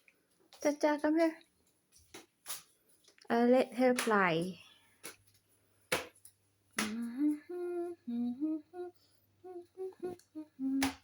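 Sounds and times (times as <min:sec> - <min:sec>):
woman humming: 0:06.8 - 0:11.0.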